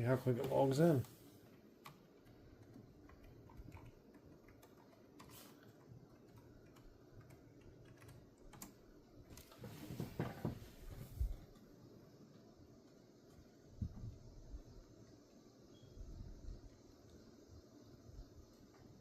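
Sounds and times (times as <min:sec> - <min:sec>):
keystrokes on laptop keyboard: 0:00.4 - 0:09.7.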